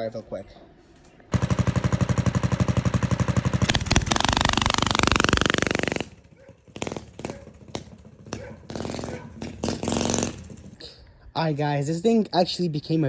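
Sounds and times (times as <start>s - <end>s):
small engine putting and revving: 1.3s - 10.8s.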